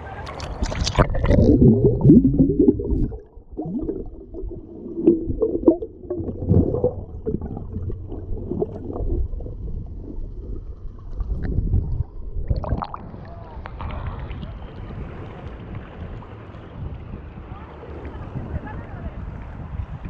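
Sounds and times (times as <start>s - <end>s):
muffled underwater gurgling: 0.0s - 16.2s
dull underwater thuds: 0.6s - 12.0s.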